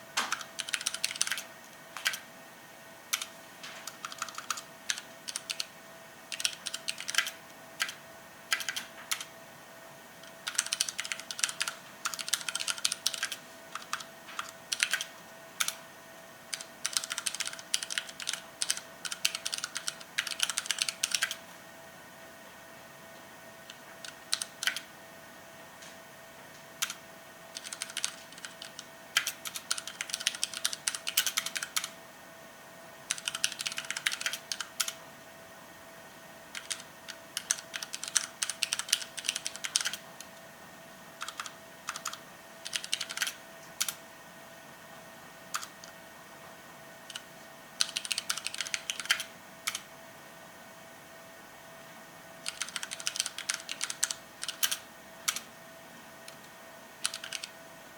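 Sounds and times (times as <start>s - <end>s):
typing on mechanical keyboard: 0.2s - 2.2s, 3.1s - 5.7s, 6.3s - 9.3s, 10.2s - 15.8s, 16.5s - 21.4s, 23.7s - 24.9s, 26.8s - 31.9s, 33.1s - 35.0s, 36.5s - 40.3s, 41.2s - 44.0s, 45.5s - 46.0s, 47.8s - 49.8s, 52.4s - 55.5s, 56.3s - 57.5s.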